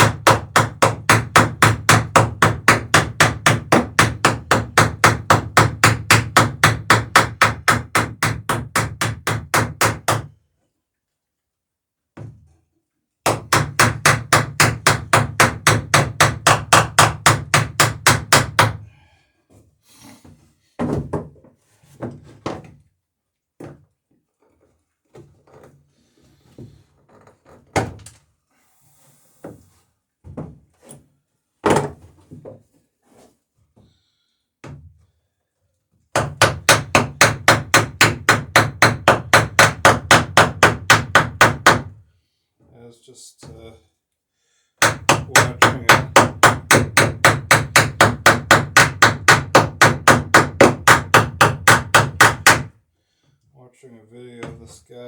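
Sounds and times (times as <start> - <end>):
hammer riveting wood: 44.8 - 52.7.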